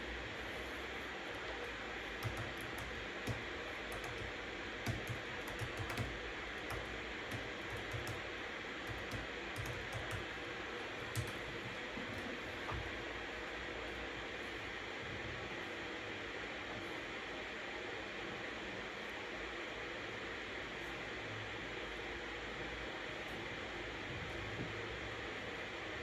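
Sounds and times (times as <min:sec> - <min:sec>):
computer keyboard typing: 0:01.3 - 0:13.1.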